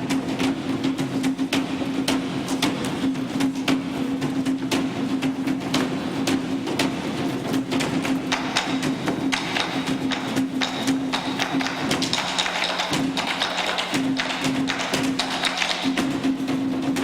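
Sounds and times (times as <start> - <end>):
wood block taps: 8.3 - 16.3.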